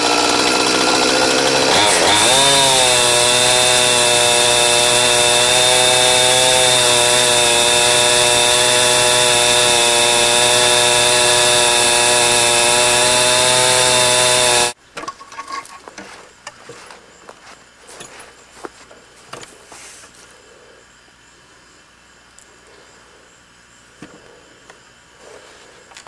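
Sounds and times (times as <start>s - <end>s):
chainsaw ripping log: 0.0s - 14.8s.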